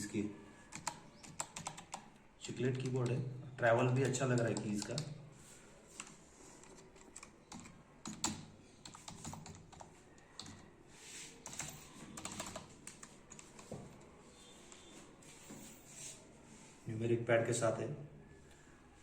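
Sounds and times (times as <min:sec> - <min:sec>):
keyboard keys clicking: 0:00.7 - 0:02.2, 0:03.9 - 0:05.2, 0:06.0 - 0:10.6, 0:11.4 - 0:14.1.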